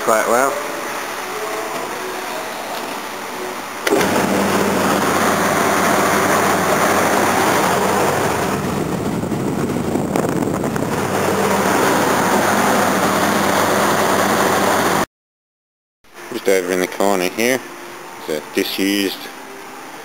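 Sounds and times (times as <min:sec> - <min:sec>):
extraction fan running: 0:00.0 - 0:15.1
fan switch click: 0:03.8 - 0:04.2.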